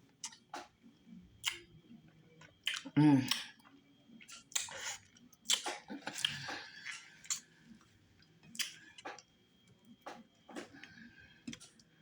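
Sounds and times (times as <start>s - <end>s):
wet chewing: 4.2s - 7.5s.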